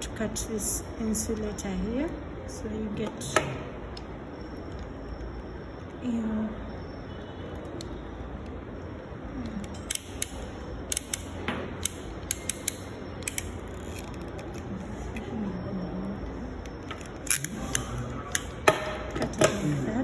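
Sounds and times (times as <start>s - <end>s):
steady low hum: 0.0s - 20.0s
hand tool clicks cutting cable: 9.8s - 14.1s.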